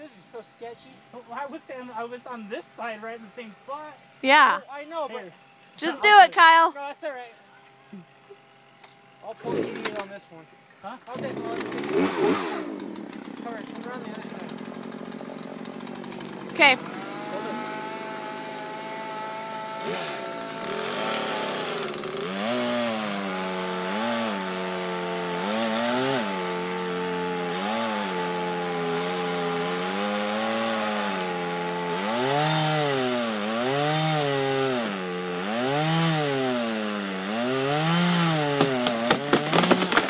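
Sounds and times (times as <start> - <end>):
chainsaw cutting wood: 9.4 - 10.1, 11.1 - 40.0
wood cracking: 37.6 - 40.0.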